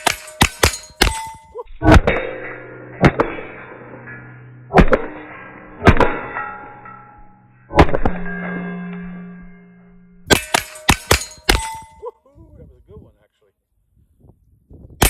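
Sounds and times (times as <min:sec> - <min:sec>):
steel target ringing: 0:00.0 - 0:12.0
rifle shots: 0:10.3 - 0:11.7.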